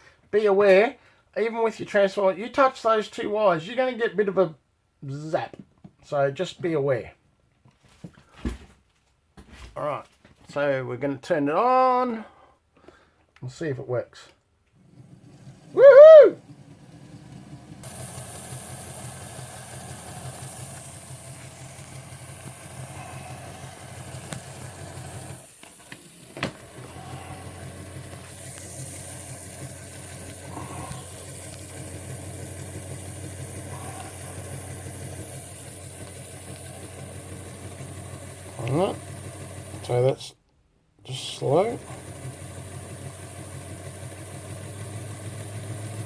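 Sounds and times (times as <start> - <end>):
small electric motor humming: 14.8 - 40.2, 41.2 - 46.0.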